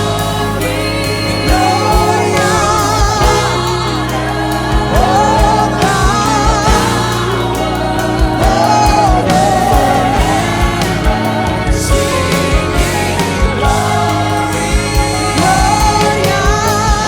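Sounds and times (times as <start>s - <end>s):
people singing: 0.0s - 17.0s
worship band playing: 0.0s - 17.0s.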